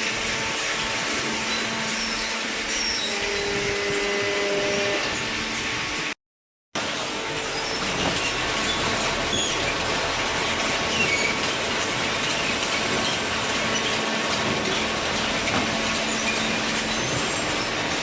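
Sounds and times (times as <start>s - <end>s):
baler mechanical noise: 6.8s - 18.0s.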